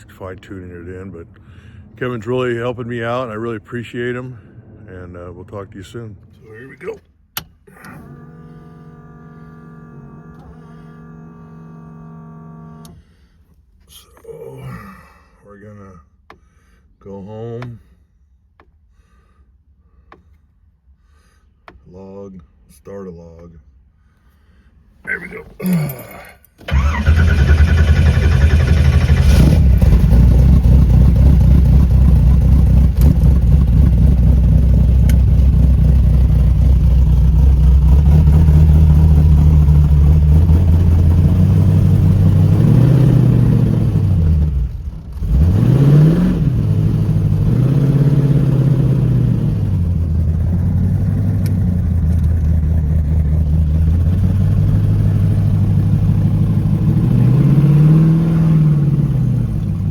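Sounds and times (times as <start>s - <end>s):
car engine revving: 7.7s - 13.0s, 26.7s - 59.9s.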